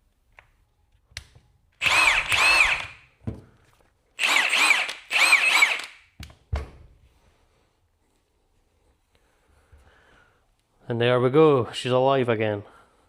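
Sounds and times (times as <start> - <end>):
impact wrench spinning: 1.8 - 3.1, 4.2 - 6.1.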